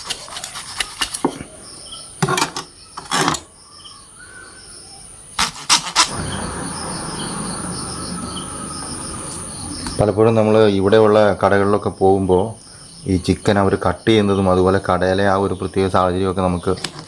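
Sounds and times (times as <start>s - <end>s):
crickets chirping: 1.3s - 17.0s.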